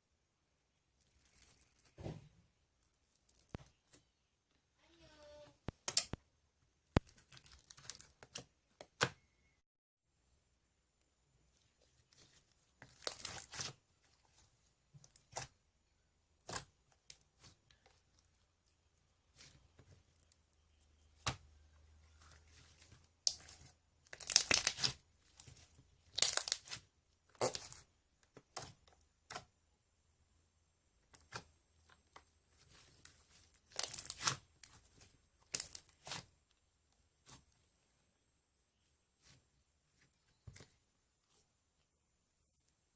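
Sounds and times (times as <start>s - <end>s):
slime squished by hand: 11.6s - 14.4s, 20.7s - 29.6s, 32.5s - 36.3s.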